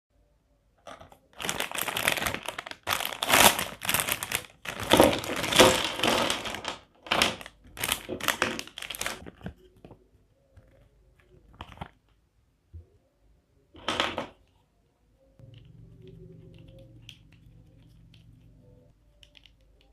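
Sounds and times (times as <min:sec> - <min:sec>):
packaging crinkling and rustling: 0:00.9 - 0:10.0.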